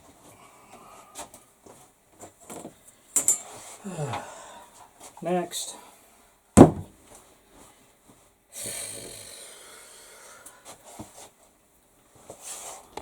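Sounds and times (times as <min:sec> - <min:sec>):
breathy hiss: 0:03.5 - 0:04.9, 0:08.5 - 0:10.9
sharp knock: 0:06.6 - 0:06.9
soft knock: 0:06.6 - 0:06.9.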